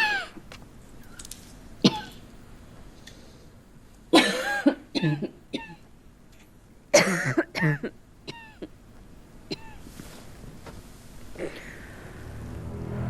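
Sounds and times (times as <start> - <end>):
woman coughing harshly: 0.0 - 0.4, 1.8 - 2.2, 4.2 - 5.8, 6.9 - 8.7, 9.5 - 9.8.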